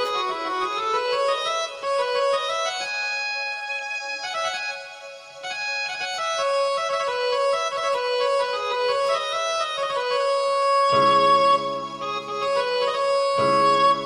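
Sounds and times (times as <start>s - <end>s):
electronic keyboard melody: 0.0s - 14.0s.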